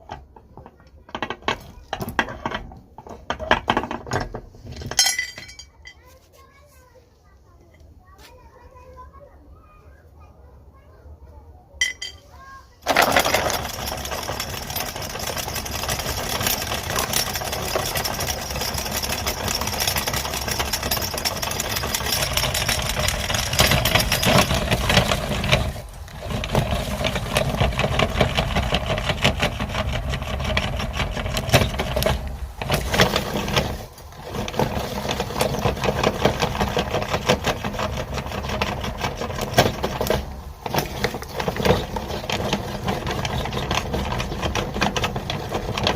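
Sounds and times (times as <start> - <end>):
meat grinder crunching plastic: 12.9 - 45.9.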